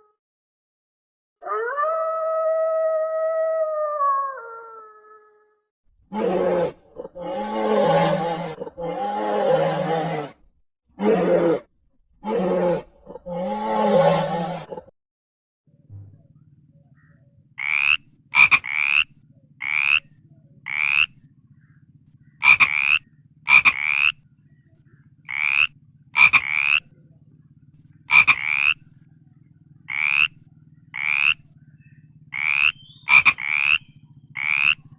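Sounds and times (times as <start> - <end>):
animal short rising calls: 6.1 - 10.4, 11.0 - 14.9.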